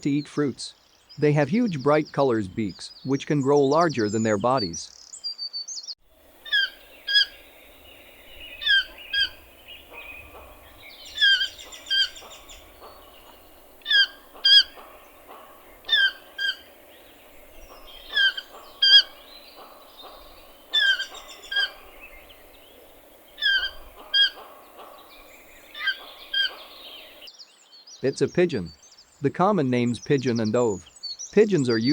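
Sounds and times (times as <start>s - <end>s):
toucan calling: 6.2s - 27.3s.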